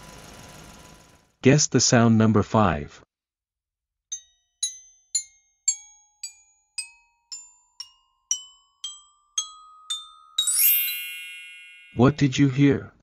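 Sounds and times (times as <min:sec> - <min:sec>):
xylophone notes climbing a scale: 0:04.1 - 0:12.4.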